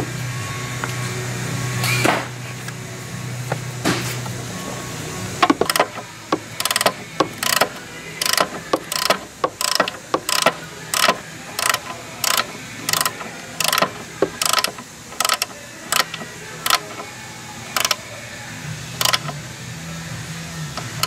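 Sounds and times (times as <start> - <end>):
ratchet wrench clicking: 5.4 - 18.1, 18.9 - 19.4.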